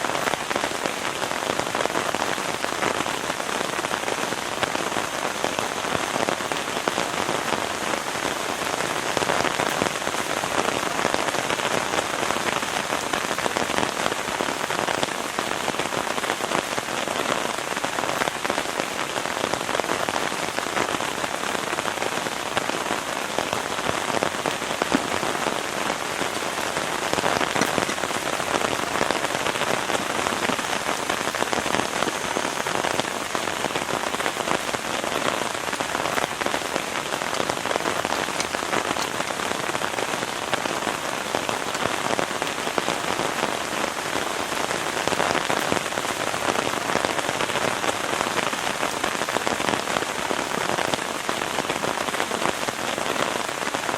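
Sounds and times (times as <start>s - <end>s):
heavy rain falling: 0.0s - 53.9s.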